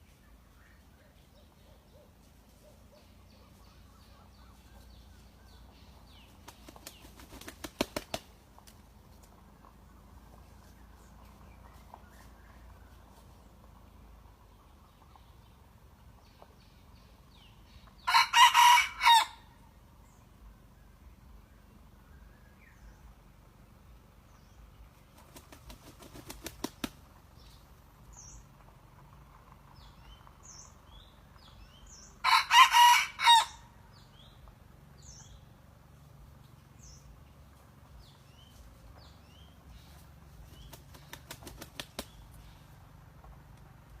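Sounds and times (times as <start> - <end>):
rooster wings flapping: 6.4 - 8.8, 25.1 - 27.0, 40.4 - 42.3
rooster crowing: 18.1 - 19.5, 32.2 - 33.7
small birds chirping: 36.4 - 43.0.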